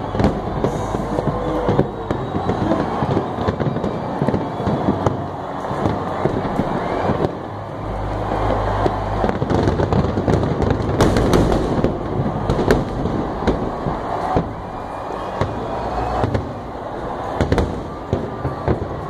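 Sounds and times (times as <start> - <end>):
fireworks crackling and banging: 0.0 - 19.0.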